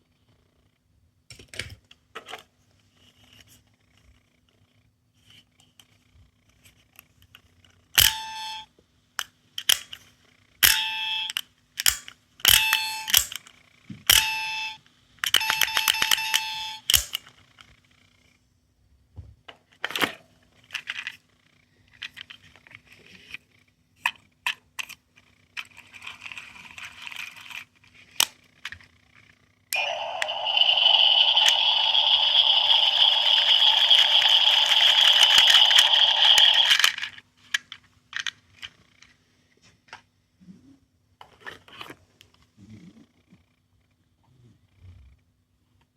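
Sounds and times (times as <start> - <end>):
plastic toys clicking and rattling: 9.6 - 10.0, 11.8 - 13.5, 19.7 - 21.2, 24.0 - 28.9, 30.8 - 39.2
short electronic tone: 29.8 - 36.8
toy sound chip electronic sound: 29.8 - 37.0.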